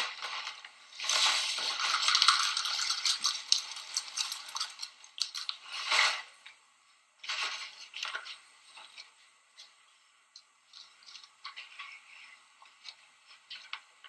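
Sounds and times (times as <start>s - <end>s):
dry cereal flakes rattling in bowl: 1.0s - 6.2s.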